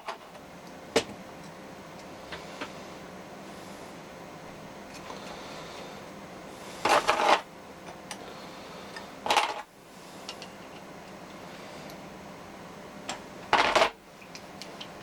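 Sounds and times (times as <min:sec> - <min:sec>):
faint steady hum: 0:00.0 - 0:15.0
metal parts clattering: 0:06.8 - 0:07.4, 0:09.2 - 0:09.7, 0:13.5 - 0:14.0.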